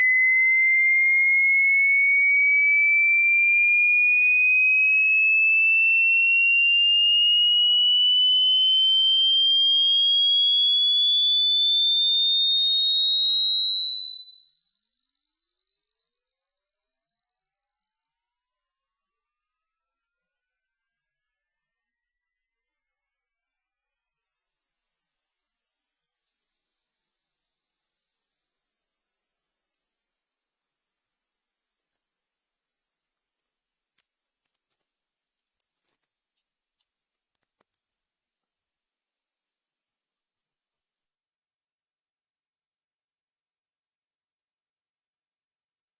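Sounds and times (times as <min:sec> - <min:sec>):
rising sine tone: 0:22.4 - 0:39.0.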